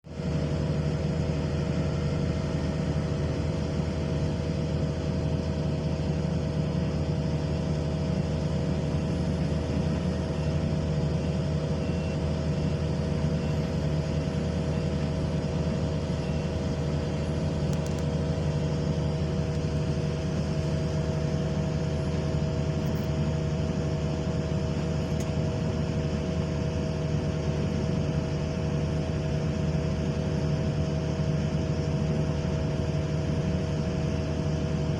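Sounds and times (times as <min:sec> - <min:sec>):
excavator diesel engine running: 0:00.1 - 0:34.9.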